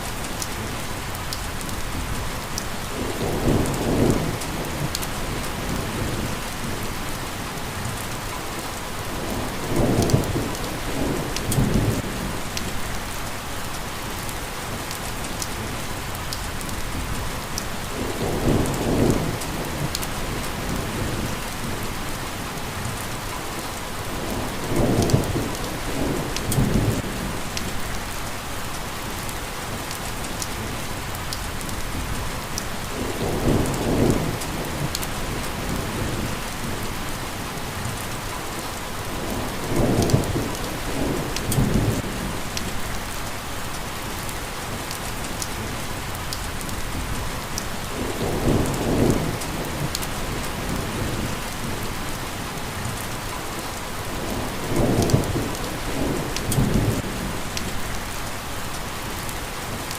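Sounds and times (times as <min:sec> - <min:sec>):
steady rain falling: 0:00.0 - 0:59.9
low thunder rumbles: 0:01.9 - 0:06.9, 0:09.1 - 0:13.0, 0:16.8 - 0:22.1, 0:24.1 - 0:28.0, 0:31.8 - 0:38.0, 0:39.0 - 0:43.2, 0:46.8 - 0:53.0, 0:54.0 - 0:58.3.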